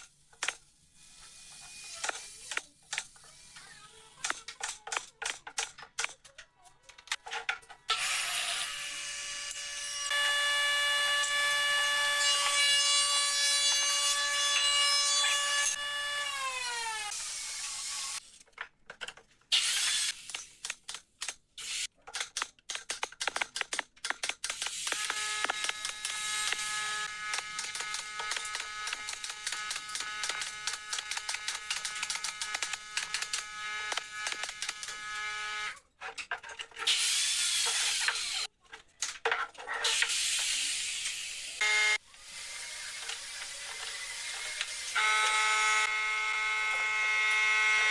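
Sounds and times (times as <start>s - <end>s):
clicks and taps of hand work: 22.0s - 26.6s
power tool motor cutting wood: 24.7s - 35.8s, 39.9s - 47.9s.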